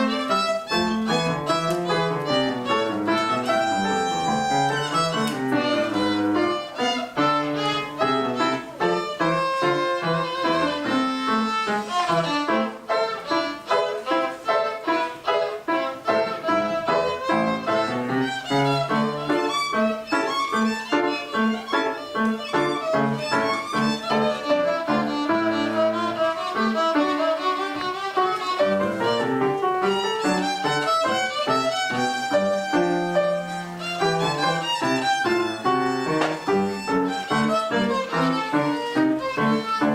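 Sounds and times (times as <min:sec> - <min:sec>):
lower accompaniment: 0:00.0 - 0:13.9
violin playing quick passages: 0:00.0 - 0:39.9.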